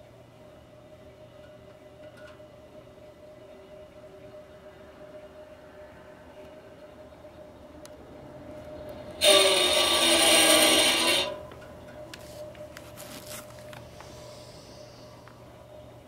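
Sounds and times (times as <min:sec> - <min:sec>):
faint steady hum: 0:00.0 - 0:16.0
radiator harsh rasping: 0:09.2 - 0:11.5.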